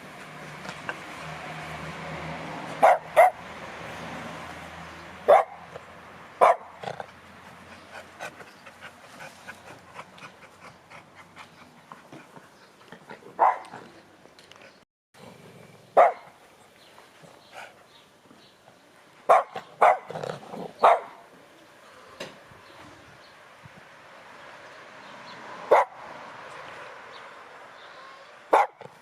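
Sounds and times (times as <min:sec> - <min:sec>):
dog barking: 0:02.8 - 0:03.4, 0:05.3 - 0:05.7, 0:06.4 - 0:06.8, 0:13.4 - 0:13.8, 0:16.0 - 0:16.3, 0:19.3 - 0:20.2, 0:20.8 - 0:21.2, 0:25.7 - 0:26.0, 0:28.5 - 0:29.0.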